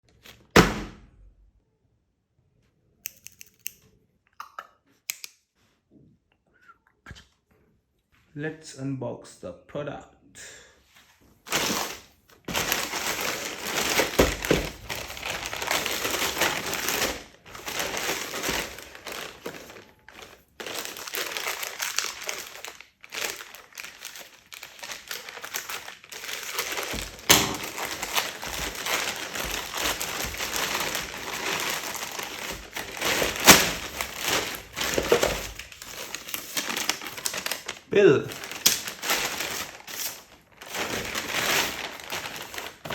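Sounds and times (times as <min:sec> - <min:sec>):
packaging crinkling and rustling: 0:11.4 - 0:42.9.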